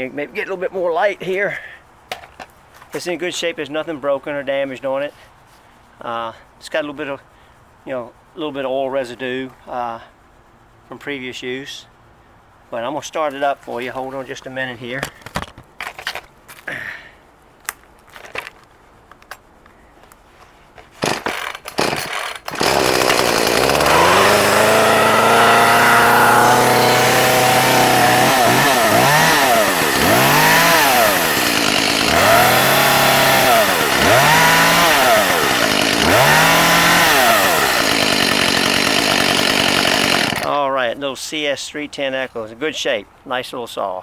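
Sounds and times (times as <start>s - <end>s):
chainsaw engine revving: 21.0s - 40.6s.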